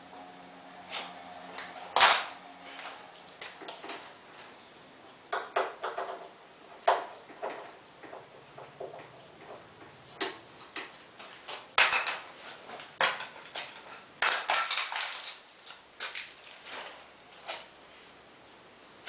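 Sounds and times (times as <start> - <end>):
metal tools clinking: 13.2 - 16.8.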